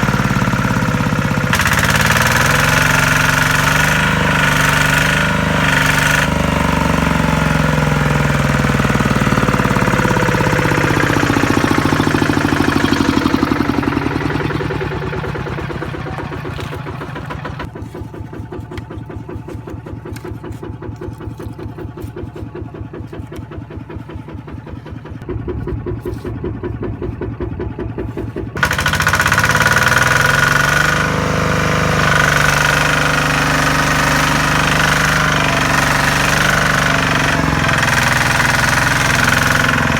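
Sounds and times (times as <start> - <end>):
diesel engine knocking: 0.0 - 39.9.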